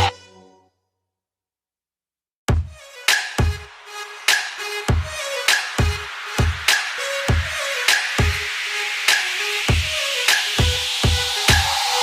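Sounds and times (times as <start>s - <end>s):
music with steady drum beat: 2.5s - 12.0s.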